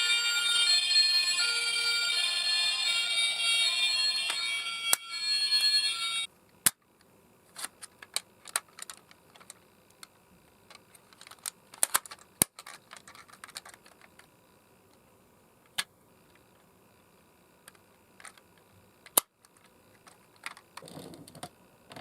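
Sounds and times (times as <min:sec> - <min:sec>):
toy electronic siren: 0:00.0 - 0:06.3.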